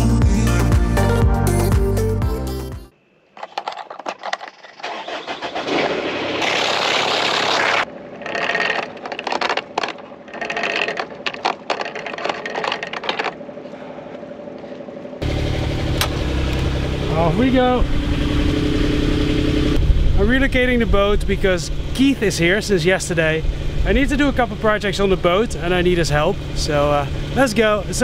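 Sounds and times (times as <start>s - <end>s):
rattling and clicking: 3.4s - 7.1s, 8.2s - 13.4s
boat engine running: 9.8s - 28.0s.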